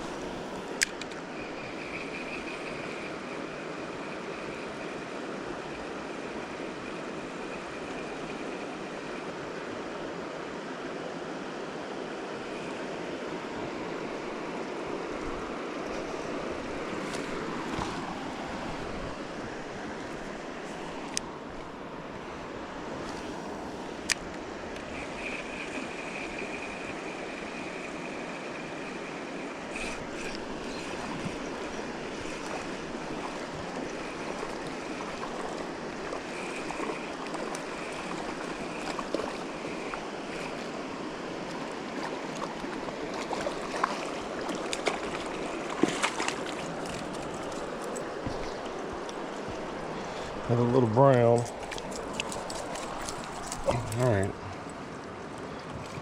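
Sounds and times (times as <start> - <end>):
river rushing over riffles: 27.0 - 56.0.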